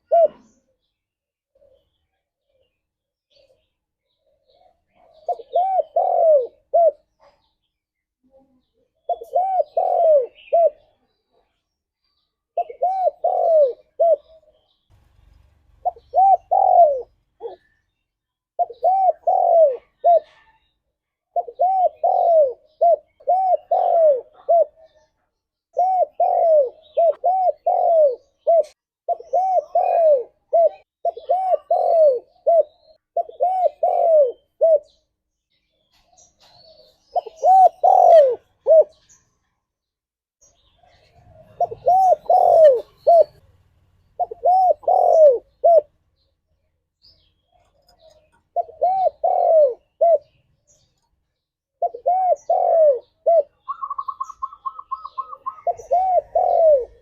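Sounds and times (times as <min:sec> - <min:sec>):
dove cooing: 0:00.0 - 0:00.9, 0:03.3 - 0:07.5, 0:09.0 - 0:11.5, 0:12.6 - 0:14.7, 0:15.8 - 0:17.9, 0:18.6 - 0:25.1, 0:25.7 - 0:35.0, 0:36.6 - 0:39.2, 0:40.8 - 0:43.5, 0:44.2 - 0:46.0, 0:47.5 - 0:50.4, 0:51.8 - 0:57.0.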